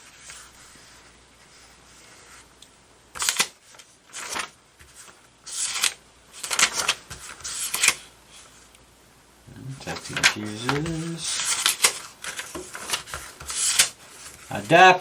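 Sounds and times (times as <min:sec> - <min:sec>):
paper pages rustling: 0:03.2 - 0:08.7, 0:09.7 - 0:15.0.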